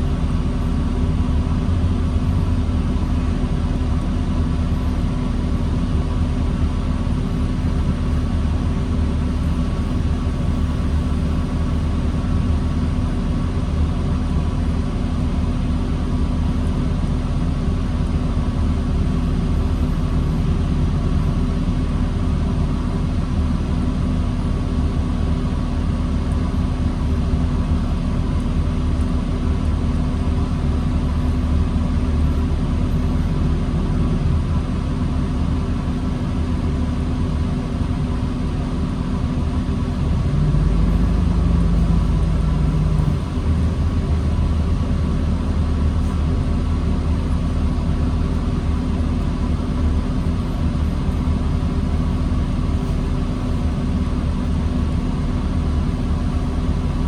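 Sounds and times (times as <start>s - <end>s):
bus diesel engine running: 0.0s - 57.0s.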